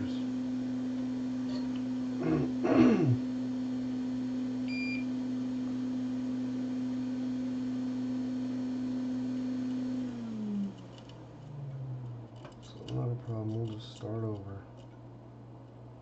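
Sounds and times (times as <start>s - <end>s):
small electric motor humming: 6.7s - 12.4s.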